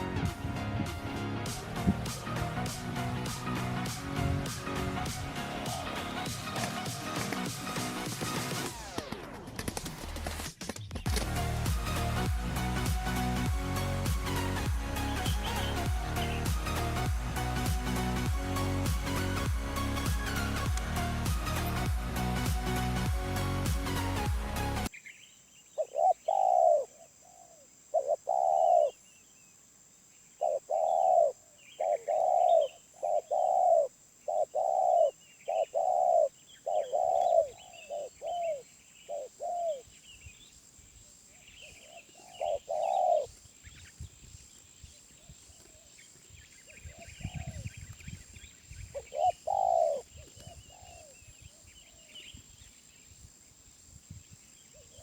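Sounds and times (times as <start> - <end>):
dove cooing: 5.0 - 6.7, 25.8 - 29.0, 30.4 - 39.9, 41.6 - 43.4, 48.9 - 51.2
small birds chirping faintly: 24.9 - 55.0.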